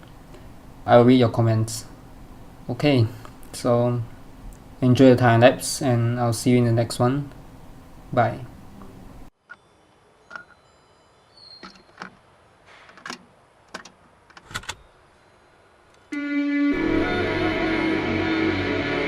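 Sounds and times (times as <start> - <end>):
background music: 16.2 - 19.0.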